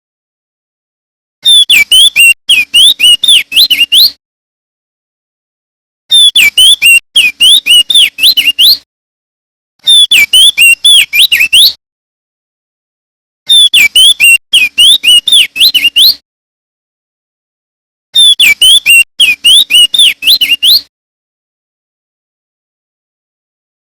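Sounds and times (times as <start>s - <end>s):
bird singing whistled notes: 1.4s - 4.2s, 6.1s - 8.8s, 9.8s - 11.8s, 13.5s - 16.2s, 18.2s - 20.9s.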